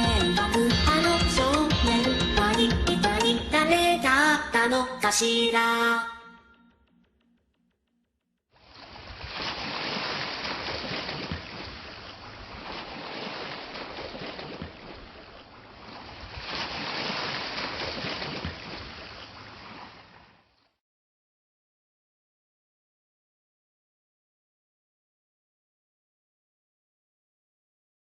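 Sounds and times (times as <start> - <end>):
ocean waves washing on shore: 8.7 - 20.3.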